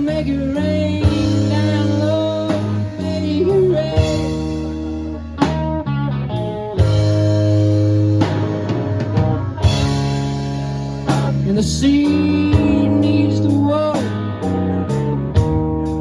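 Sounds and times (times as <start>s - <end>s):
guitar sliding bending notes: 0.0s - 16.0s
slow blues band music: 0.0s - 16.0s.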